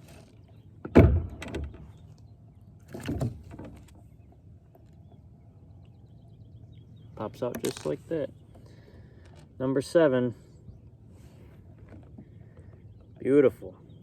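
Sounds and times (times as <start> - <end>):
knocks and thumps on a kayak: 0.8 - 2.0, 2.9 - 3.9.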